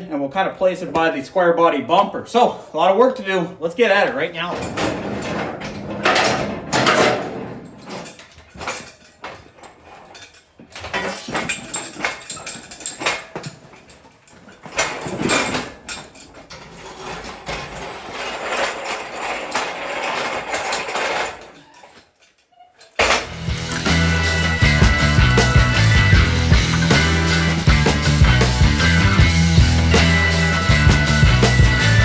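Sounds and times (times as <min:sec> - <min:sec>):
scraping and shuffling: 0:02.4 - 0:22.2, 0:22.8 - 0:32.0
metallic knocks and clanks: 0:04.4 - 0:16.8, 0:22.9 - 0:32.0.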